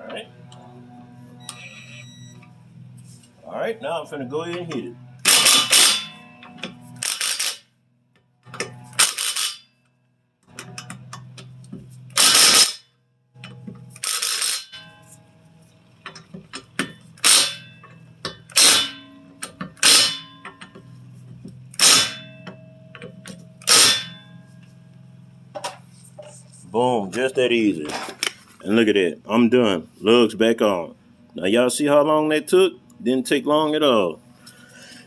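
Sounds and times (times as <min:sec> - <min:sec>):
steady low hum: 0:00.0 - 0:09.7, 0:10.5 - 0:35.0
impact wrench hammering: 0:05.2 - 0:07.6, 0:09.0 - 0:09.6, 0:12.1 - 0:12.8, 0:14.0 - 0:14.9, 0:16.1 - 0:20.8, 0:21.8 - 0:24.3.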